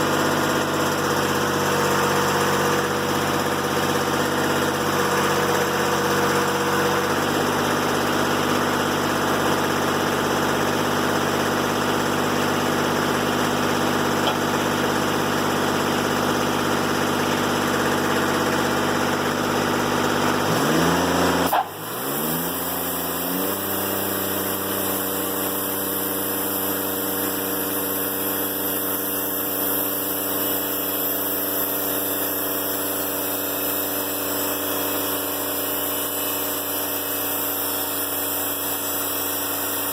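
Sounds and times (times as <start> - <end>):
diesel engine running: 0.0 - 39.9
band saw blade cutting log: 14.0 - 14.9, 20.5 - 28.4.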